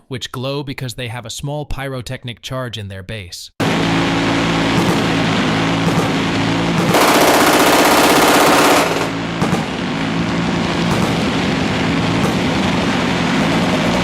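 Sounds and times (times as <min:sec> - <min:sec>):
steady rumble: 0:03.6 - 0:14.0
minigun firing burst: 0:04.7 - 0:10.0.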